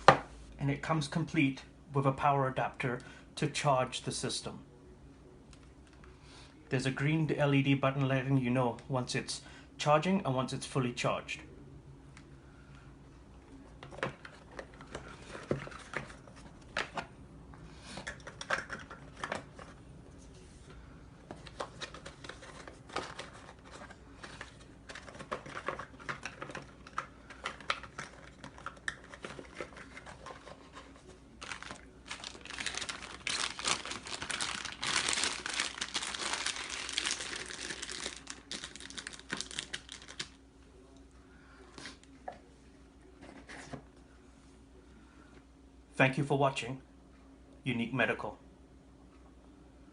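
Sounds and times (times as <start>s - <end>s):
packaging crinkling and rustling: 21.3s - 40.4s.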